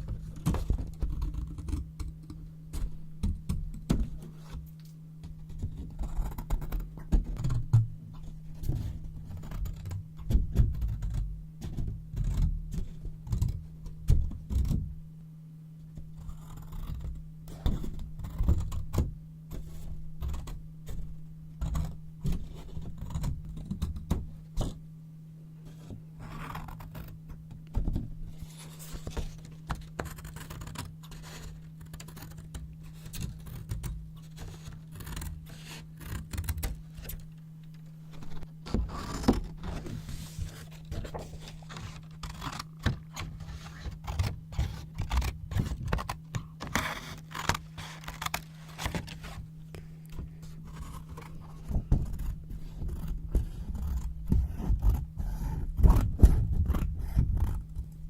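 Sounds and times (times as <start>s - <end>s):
paper rustling: 38.1s - 54.1s.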